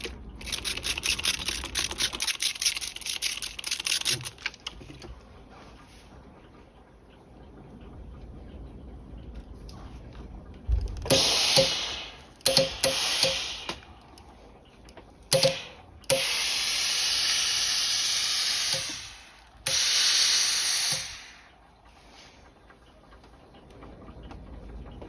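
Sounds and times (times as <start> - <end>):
steam iron click: 11.0 - 14.3, 15.3 - 21.6
steam iron hissing: 11.1 - 13.9, 15.3 - 21.5.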